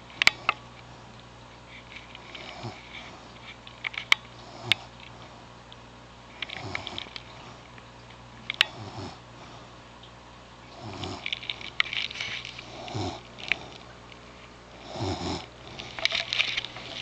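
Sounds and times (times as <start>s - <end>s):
person snoring: 2.3s - 3.2s, 4.4s - 4.9s, 6.6s - 7.6s, 8.7s - 9.7s, 10.7s - 11.3s, 12.6s - 13.8s, 14.7s - 16.0s
light crackling clicks: 3.3s - 8.8s.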